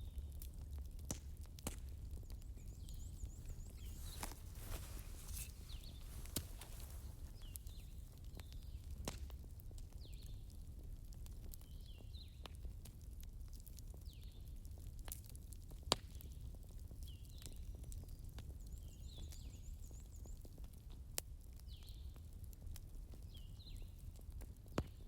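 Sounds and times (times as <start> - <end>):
wood fire crackling: 0.2 - 14.0.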